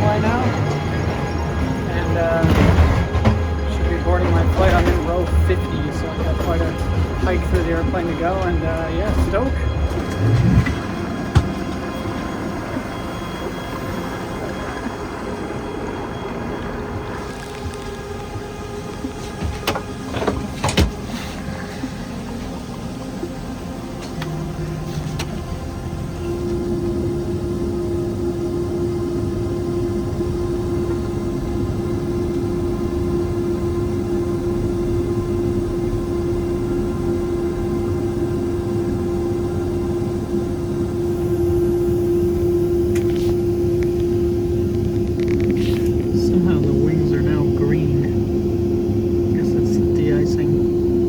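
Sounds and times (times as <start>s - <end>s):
airliner cabin rumble: 0.0s - 51.0s.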